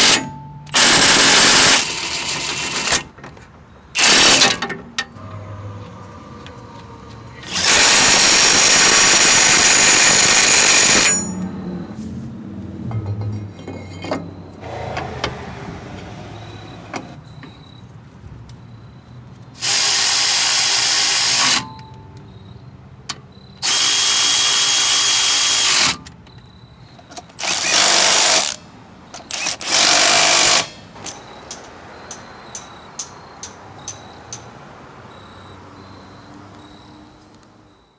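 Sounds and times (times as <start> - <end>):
power tool running: 7.4 - 11.2.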